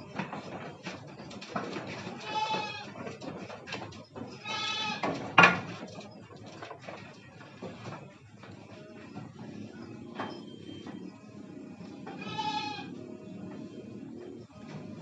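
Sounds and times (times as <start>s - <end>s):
small clatters and knocks: 0.0s - 11.4s, 12.0s - 15.0s
goat bleating: 2.0s - 3.0s, 4.3s - 5.2s, 12.0s - 13.0s.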